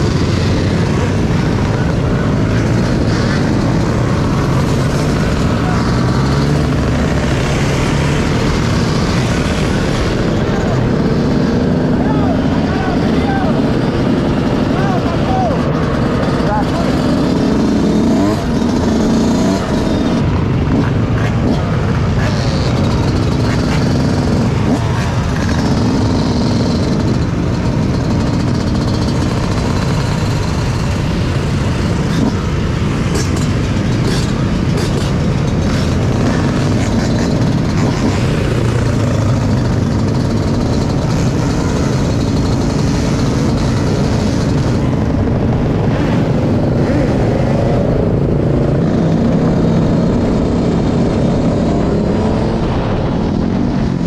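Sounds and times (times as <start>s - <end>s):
off-road vehicle engines revving: 0.0s - 54.0s.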